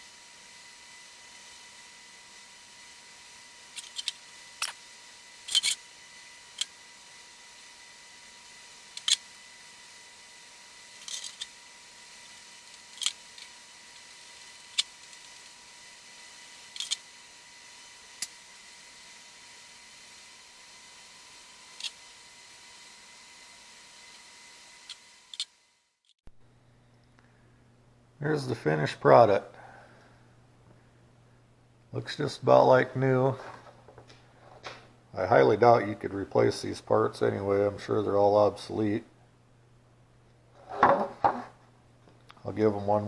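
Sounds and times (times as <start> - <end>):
small hard parts clicking: 3.8 - 4.8, 5.5 - 5.8, 9.0 - 9.2, 11.0 - 11.5, 12.7 - 14.0, 16.7 - 17.0.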